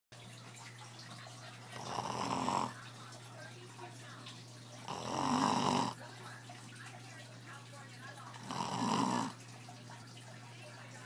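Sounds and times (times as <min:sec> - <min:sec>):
man snoring: 0:01.8 - 0:02.8, 0:04.9 - 0:06.0, 0:08.4 - 0:09.4.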